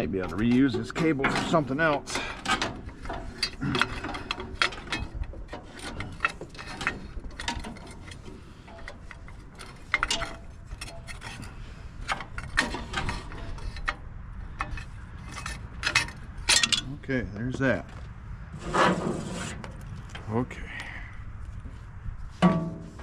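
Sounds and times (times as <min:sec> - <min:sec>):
metallic tool clicks and rattles: 0:14.6 - 0:16.9.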